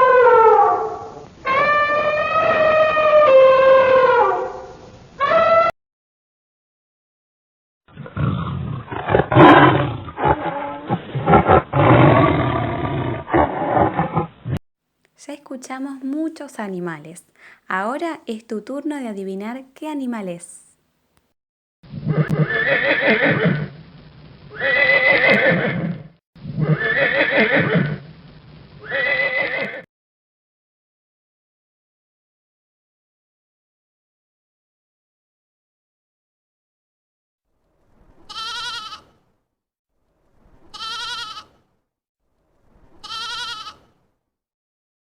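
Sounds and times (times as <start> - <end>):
horse whinnying: 1.4 - 4.2, 22.0 - 23.7, 24.5 - 26.0, 26.6 - 28.0, 28.8 - 29.8
big cat roaring: 7.9 - 14.6.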